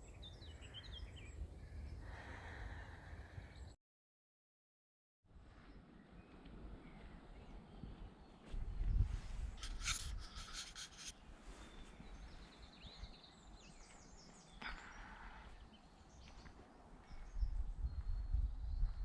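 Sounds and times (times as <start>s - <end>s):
songbirds singing: 0.0s - 3.8s, 5.6s - 9.0s, 10.4s - 19.0s
low rumbling on microphone: 17.1s - 19.0s.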